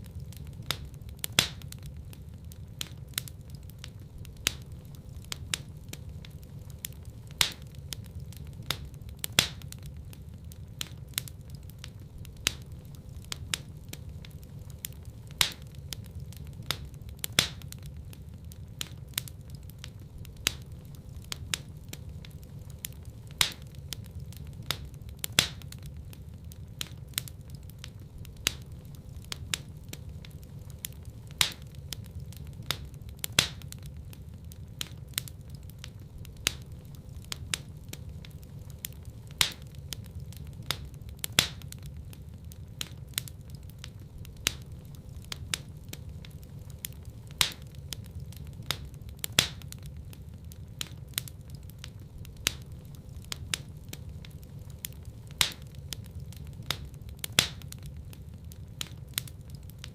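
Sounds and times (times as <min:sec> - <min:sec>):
fireplace fire crackling and popping: 0:00.0 - 0:59.9
low steady rumble: 0:00.0 - 0:59.9.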